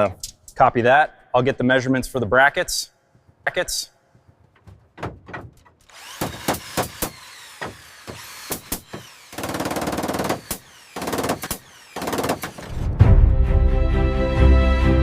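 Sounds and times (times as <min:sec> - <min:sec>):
knocks and clicks: 0:04.2 - 0:09.2
power tool rapid impacts: 0:05.0 - 0:12.8.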